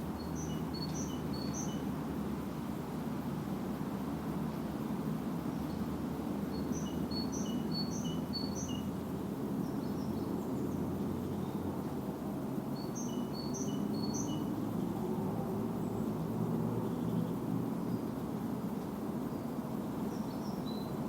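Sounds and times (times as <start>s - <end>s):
songbird singing: 0.0s - 2.2s, 5.4s - 11.7s, 12.7s - 18.3s, 19.2s - 21.0s.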